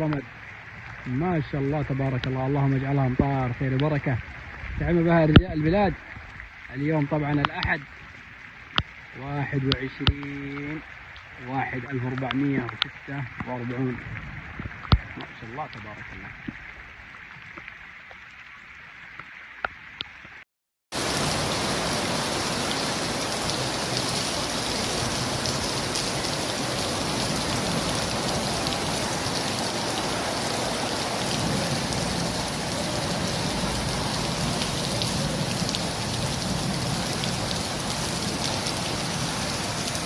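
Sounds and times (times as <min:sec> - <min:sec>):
heavy rain pouring: 0:20.9 - 0:40.0.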